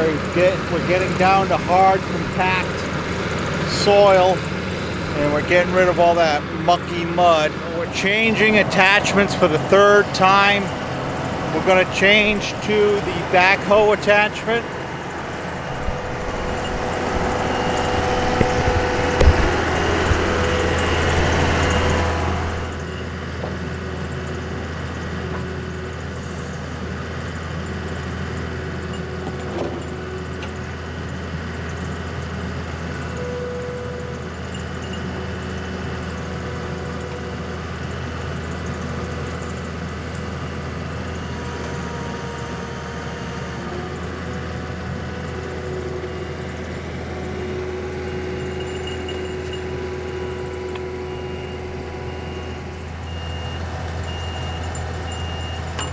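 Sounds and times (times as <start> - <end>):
skid steer engine running: 0.0 - 55.9
sharp knocks: 15.7 - 21.7.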